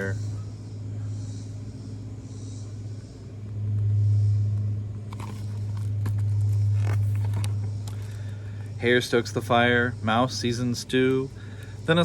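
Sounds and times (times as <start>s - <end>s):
steady low hum: 0.0s - 12.0s
book page rustling: 5.1s - 8.2s.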